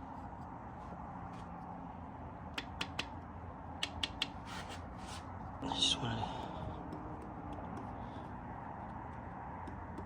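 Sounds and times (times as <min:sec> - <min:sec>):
light sharp clicks: 0:03.8 - 0:04.4.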